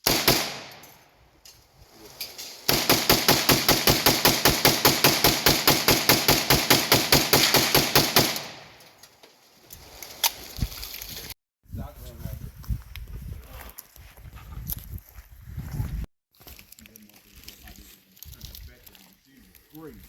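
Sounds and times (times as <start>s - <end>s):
rifle firing rapid shots: 0.0s - 0.8s, 2.7s - 8.8s.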